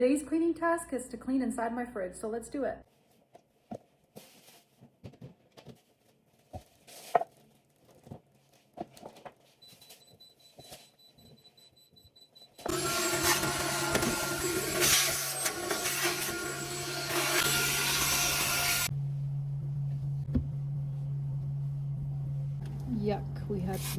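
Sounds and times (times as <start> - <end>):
small electric motor whirring hum: 12.7 - 18.9.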